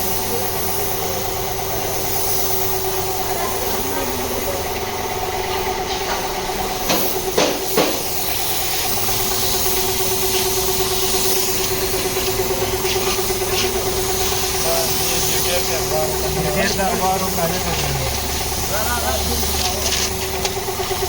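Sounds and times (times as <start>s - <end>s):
small motor humming: 0.0s - 21.0s
sharp knocks: 6.8s - 8.1s.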